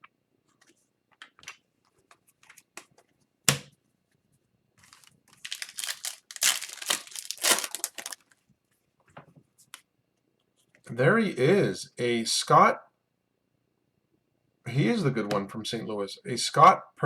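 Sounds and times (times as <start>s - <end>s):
foil wrapper tearing and crinkling: 4.9s - 8.4s
cards ticking: 5.5s - 8.2s.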